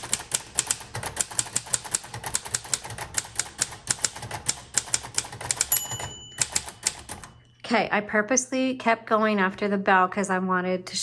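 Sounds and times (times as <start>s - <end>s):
typewriter keystroke clacks: 0.0s - 7.4s.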